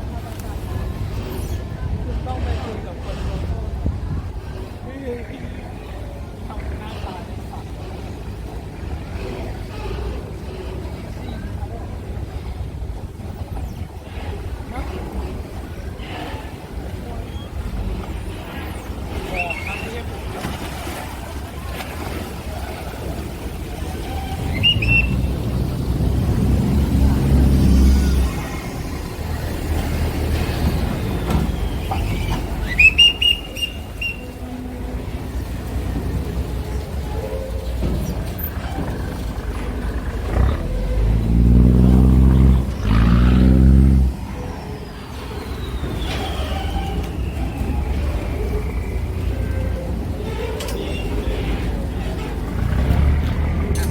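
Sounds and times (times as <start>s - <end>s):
ferry engine rumbling: 0.0s - 53.9s
low horn blasts: 23.1s - 44.4s
high whistle: 24.4s - 25.4s, 31.6s - 34.4s.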